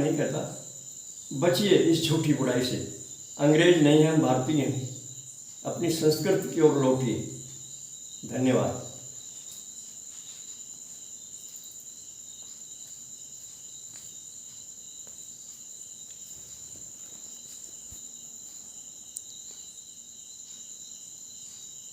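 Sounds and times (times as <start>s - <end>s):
crickets chirping: 0.0s - 21.9s.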